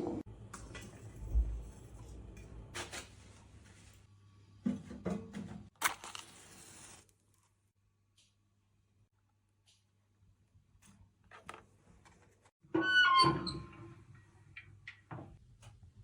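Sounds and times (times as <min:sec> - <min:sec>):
objects being handled: 0:05.4 - 0:07.6.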